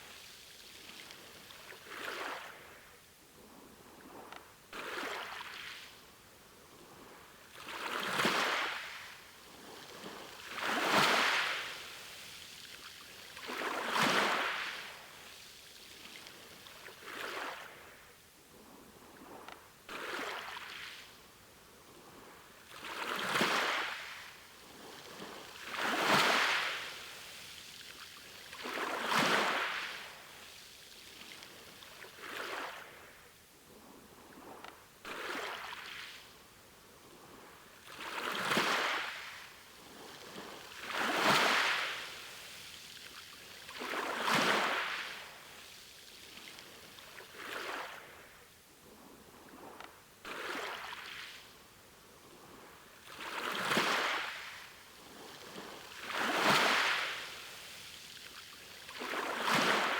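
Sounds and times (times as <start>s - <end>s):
sea waves washing in: 52.4s - 59.9s.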